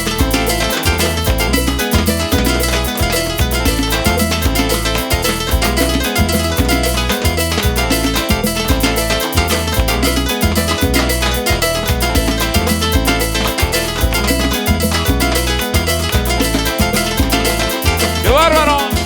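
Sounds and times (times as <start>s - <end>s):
bass line: 0.0s - 19.0s
fast percussion beat: 0.0s - 19.0s
keyboard or string melody: 18.2s - 19.0s.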